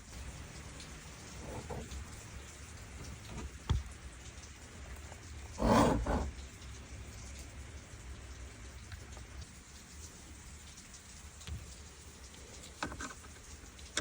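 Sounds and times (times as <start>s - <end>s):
rough handling noise: 5.6s - 6.4s.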